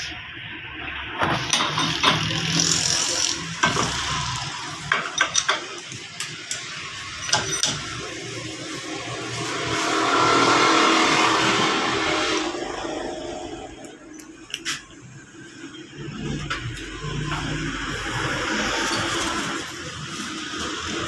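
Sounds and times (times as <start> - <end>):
steady background noise: 0.0 - 21.0
metallic clanks and knocks: 4.9 - 8.1
vehicle rushing noise: 8.3 - 13.8.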